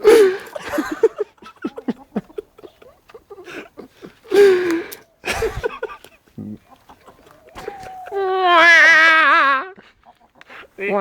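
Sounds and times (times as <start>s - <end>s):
chickens clucking: 0.0s - 8.4s, 9.7s - 11.0s
chicken drawn-out call: 6.4s - 10.4s.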